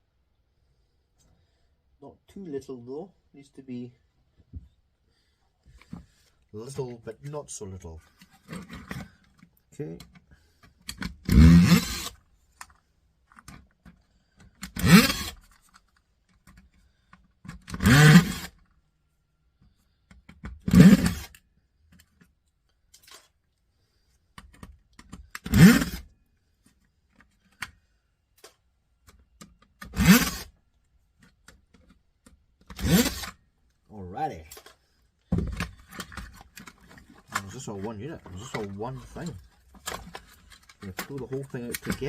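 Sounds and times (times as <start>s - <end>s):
electric screwdriver motor: 11.3s - 12.2s, 14.8s - 15.4s, 17.7s - 18.5s, 20.7s - 21.3s, 25.5s - 26.0s, 30.0s - 30.5s, 32.8s - 33.3s.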